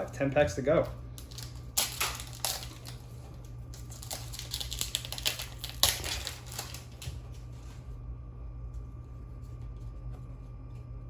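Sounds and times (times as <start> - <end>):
foil pack crinkling and clicking: 1.2 - 7.4.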